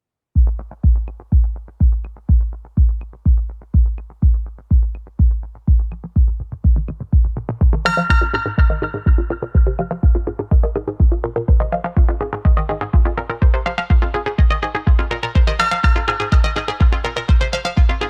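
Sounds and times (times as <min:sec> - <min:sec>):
deep kick drum: 0:00.4 - 0:18.0
bright synthesizer chord: 0:07.9 - 0:18.0.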